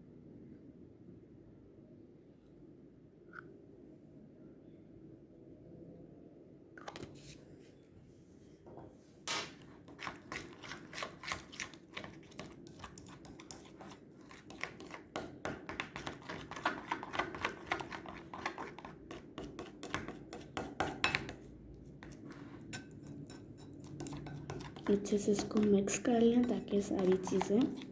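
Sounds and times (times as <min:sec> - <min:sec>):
stirrer scraping a bowl: 0:09.6 - 0:27.9.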